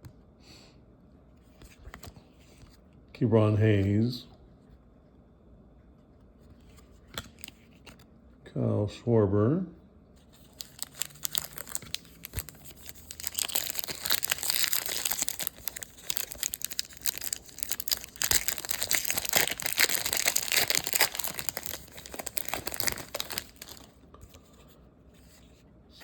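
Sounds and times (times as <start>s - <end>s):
plastic wrapper tearing and crinkling: 10.4s - 24.4s.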